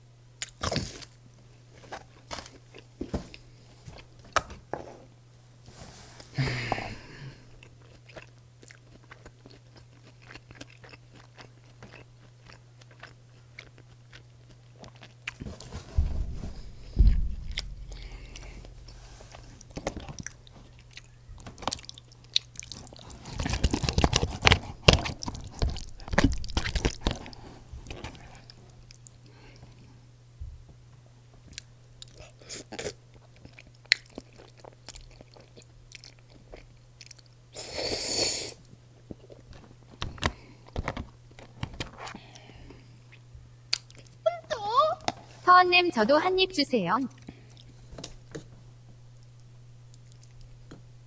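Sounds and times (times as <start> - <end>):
chewing with wet clicks: 0.4 - 0.8, 7.6 - 15.4, 20.0 - 29.4, 31.4 - 37.4, 43.1 - 44.2, 47.1 - 47.7, 49.2 - 50.8
crunching crisp food: 0.4 - 4.4, 7.6 - 15.8, 18.9 - 29.2
steady low hum: 14.9 - 23.1
low thumps: 15.4 - 21.6.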